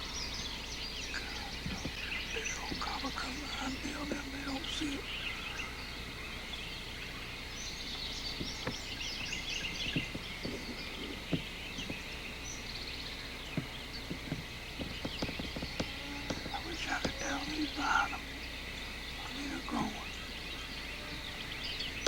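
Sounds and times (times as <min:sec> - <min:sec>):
small birds chirping: 0:00.0 - 0:22.0
soft taps: 0:09.6 - 0:12.0, 0:13.6 - 0:17.6.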